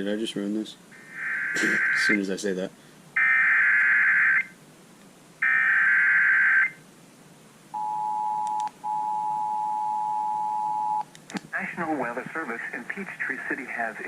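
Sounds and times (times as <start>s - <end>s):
warbling digital header bursts: 1.0s - 2.3s.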